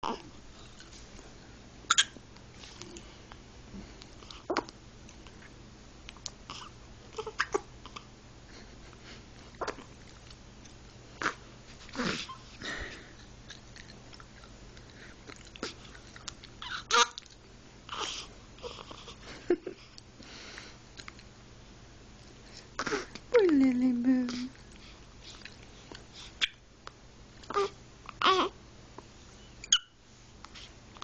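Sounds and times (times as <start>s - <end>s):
hiccups: 1.9s - 2.2s, 4.5s - 4.7s, 6.5s - 7.7s, 29.6s - 30.0s.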